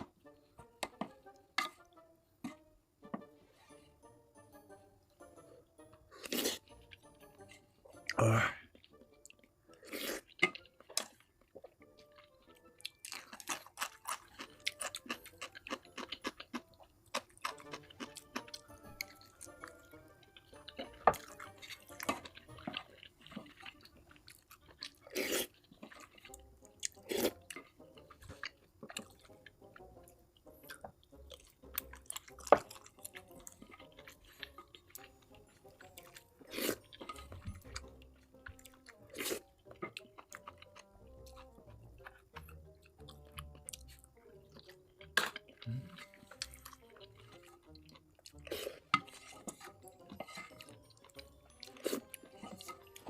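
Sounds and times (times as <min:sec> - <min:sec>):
chewing with wet mouth smacks: 0:08.8 - 0:19.8, 0:20.7 - 0:29.6, 0:35.8 - 0:53.0.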